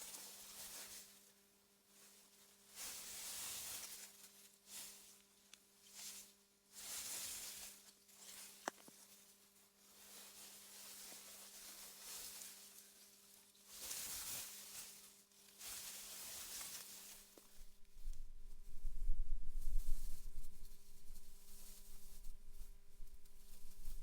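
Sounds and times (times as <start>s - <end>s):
wind blowing through grass: 17.5s - 24.0s
low rumble: 17.7s - 24.0s.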